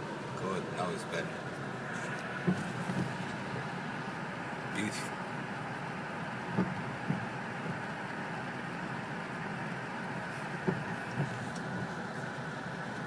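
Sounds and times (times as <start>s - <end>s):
car running noise from inside: 0.0s - 13.0s
faint knocks: 2.4s - 3.4s, 6.5s - 7.3s.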